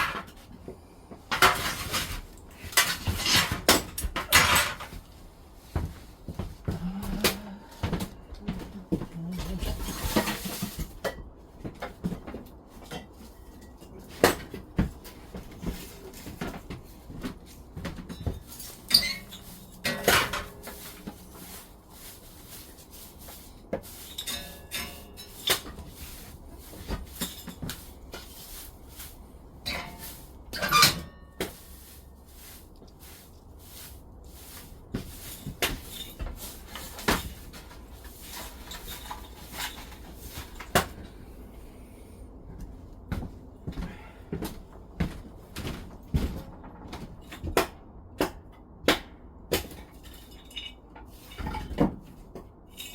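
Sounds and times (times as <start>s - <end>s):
wooden sticks knocking and clattering: 0.0s - 0.5s, 1.2s - 5.2s, 5.8s - 41.1s.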